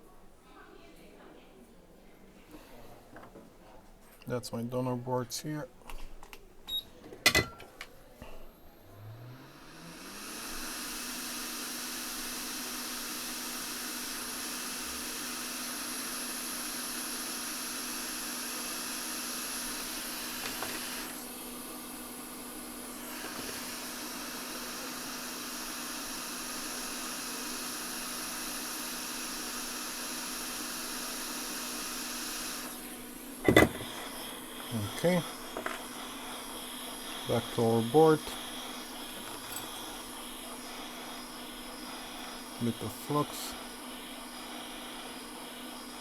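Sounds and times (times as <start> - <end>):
hot air station fan humming: 7.4 - 46.0.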